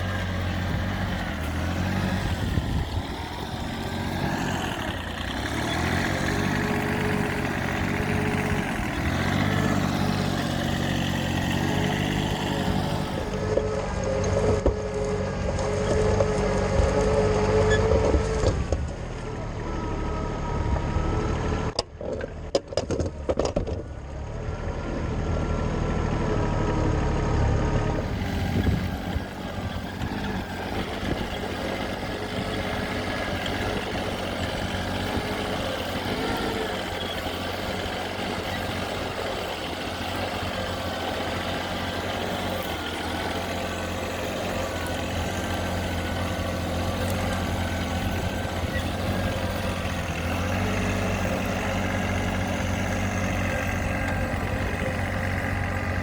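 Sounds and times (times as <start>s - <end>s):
tractor engine running: 0.0s - 56.0s.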